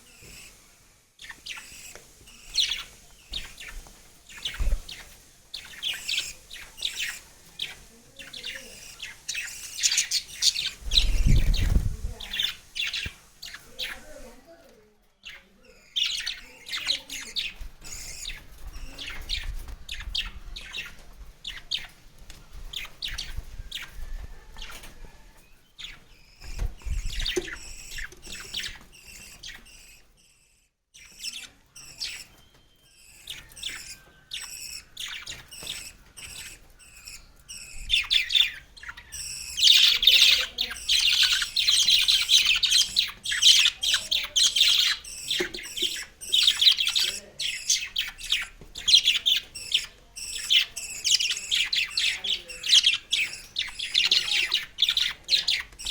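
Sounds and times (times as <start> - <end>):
young bird begging chirps: 31.0 - 55.9.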